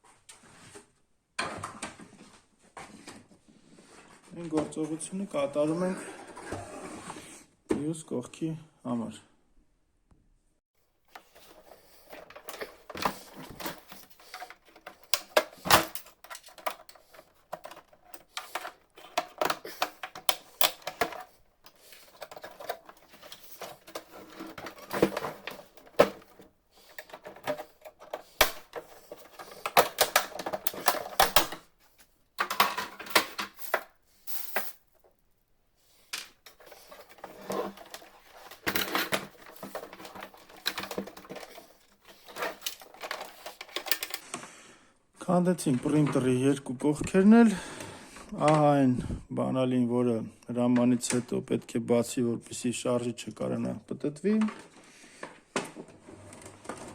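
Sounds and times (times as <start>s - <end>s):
plastic latches clicking and snapping: 11.1s - 31.7s.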